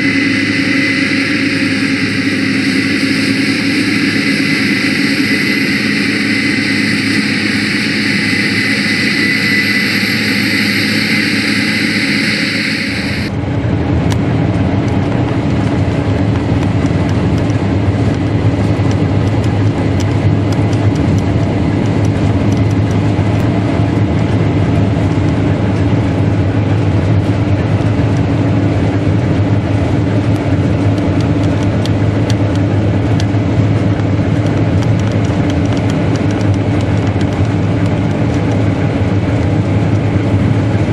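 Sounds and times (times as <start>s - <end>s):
combine harvester engine rumble: 0.0s - 40.9s
high whine: 0.0s - 40.9s.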